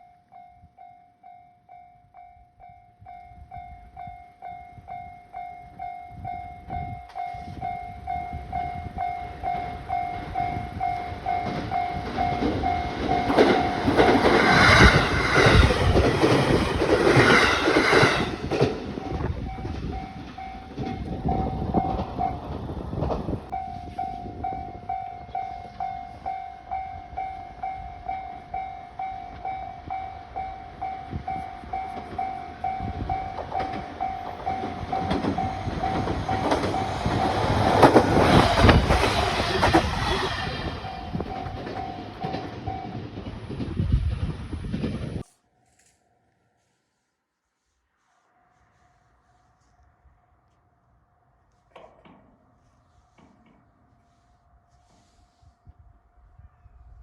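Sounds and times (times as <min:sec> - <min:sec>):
level crossing warning bell: 0:00.0 - 0:22.6, 0:23.5 - 0:43.6
train passing: 0:00.0 - 0:45.3, 0:47.9 - 0:56.9
wheels clattering over rail joints: 0:09.5 - 0:25.0, 0:31.2 - 0:43.8.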